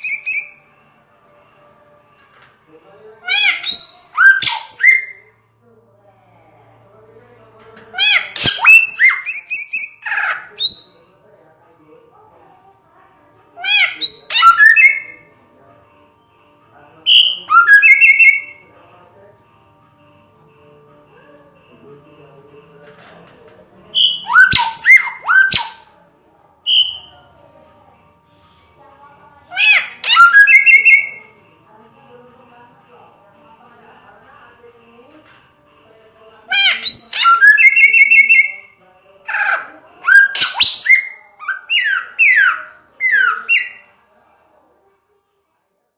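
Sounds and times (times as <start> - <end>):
bird singing whistled notes: 0.0 - 0.7, 3.4 - 5.2, 8.4 - 11.0, 14.0 - 15.2, 17.1 - 18.6, 24.0 - 25.9, 26.7 - 27.1, 29.6 - 31.3, 36.8 - 38.7, 40.1 - 43.9.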